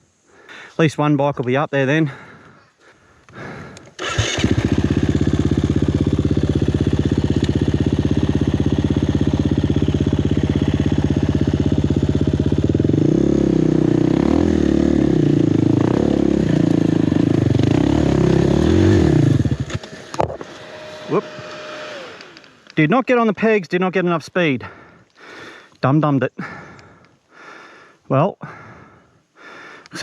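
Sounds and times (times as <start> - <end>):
dirt bike engine idling and revving: 3.4 - 23.4.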